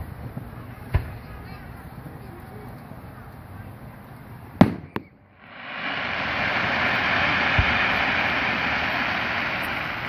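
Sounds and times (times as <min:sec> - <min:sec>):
fireworks crackling: 0:04.3 - 0:10.0
firework shell bursting: 0:04.6 - 0:10.0
low firework boom: 0:05.7 - 0:10.0.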